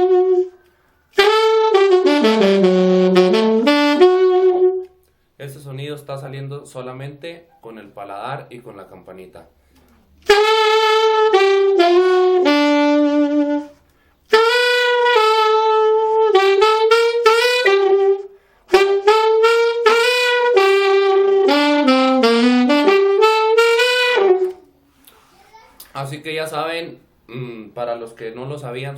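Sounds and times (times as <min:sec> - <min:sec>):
saxophone playing growled notes: 0:00.0 - 0:00.6, 0:01.2 - 0:05.0, 0:10.2 - 0:24.6.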